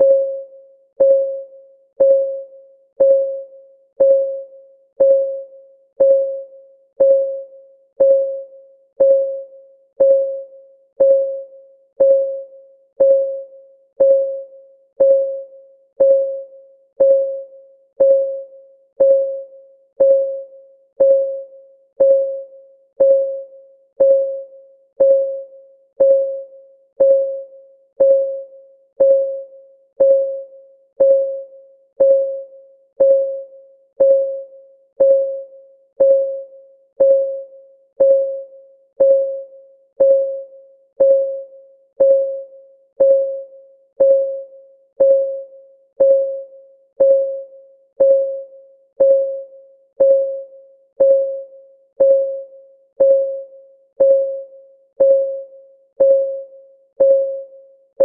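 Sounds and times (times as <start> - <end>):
timer ticking: 1.0 - 1.4, 2.0 - 2.4, 3.0 - 3.4, 4.0 - 4.4, 5.0 - 5.4, 6.0 - 6.4, 7.0 - 7.4, 8.0 - 8.4, 9.0 - 9.4, 10.0 - 10.4, 11.0 - 11.4, 12.0 - 12.4, 13.0 - 13.4, 14.0 - 14.4, 15.0 - 15.4, 16.0 - 16.4, 17.0 - 17.4, 18.0 - 18.4, 19.0 - 19.4, 20.0 - 20.4, 21.0 - 21.4, 22.0 - 22.4, 23.0 - 23.4, 24.0 - 24.4, 25.0 - 25.4, 26.0 - 26.4, 27.0 - 27.4, 28.0 - 28.4, 29.0 - 29.4, 30.0 - 30.4, 31.0 - 31.4, 32.0 - 32.4, 33.0 - 33.4, 34.0 - 34.4, 35.0 - 35.4, 36.0 - 36.4, 37.0 - 37.4, 38.0 - 38.4, 39.0 - 39.4, 40.0 - 40.4, 41.0 - 41.4, 42.0 - 42.4, 43.0 - 43.4, 44.0 - 44.4, 45.0 - 45.4, 46.0 - 46.4, 47.0 - 47.4, 48.0 - 48.4, 49.0 - 49.4, 50.0 - 50.4, 51.0 - 51.4, 52.0 - 52.4, 53.0 - 53.4, 54.0 - 54.4, 55.0 - 55.4, 56.0 - 56.4, 57.0 - 57.4.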